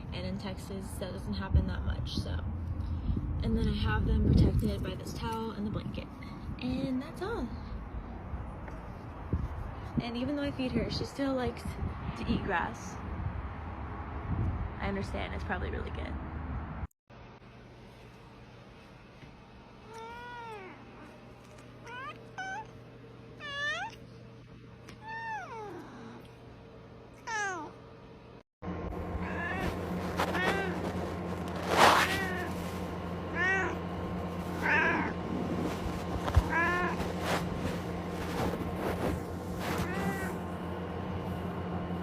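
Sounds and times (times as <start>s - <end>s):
cat meowing: 19.9s - 20.8s, 21.8s - 22.8s, 23.4s - 24.0s, 24.9s - 26.3s, 29.2s - 30.8s, 31.8s - 32.6s, 33.3s - 33.8s, 34.6s - 35.2s, 36.3s - 37.0s, 39.8s - 40.4s
steady hum: 27.8s - 42.0s.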